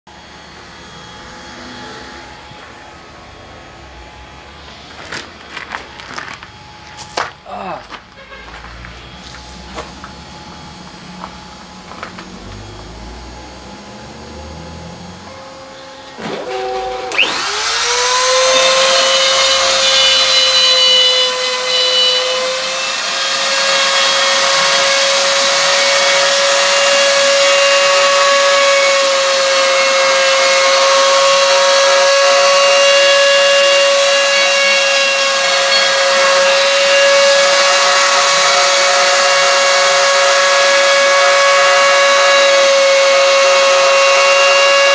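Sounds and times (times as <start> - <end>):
spindle motor whine: 10.1 - 44.9.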